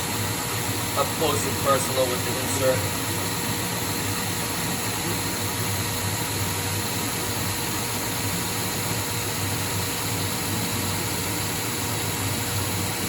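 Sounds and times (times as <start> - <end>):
lathe spindle humming: 0.0 - 13.0
coolant sprayer hissing: 0.6 - 4.1.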